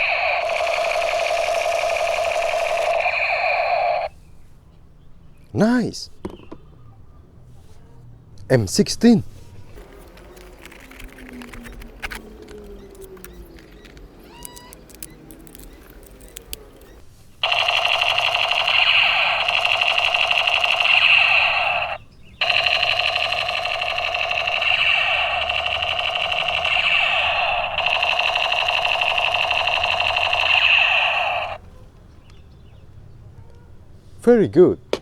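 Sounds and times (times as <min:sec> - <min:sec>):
toy rifle electronic rapid-fire buzz: 0:00.0 - 0:04.1, 0:11.7 - 0:31.6
plastic handling clicks: 0:09.8 - 0:17.0.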